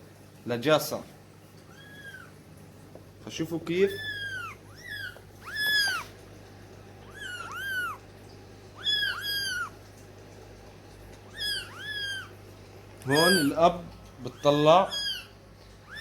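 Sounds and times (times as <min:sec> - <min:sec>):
kittens mewing: 0:01.7 - 0:02.4, 0:03.9 - 0:06.2, 0:07.0 - 0:08.1, 0:08.8 - 0:09.8, 0:11.2 - 0:12.4, 0:13.0 - 0:16.0.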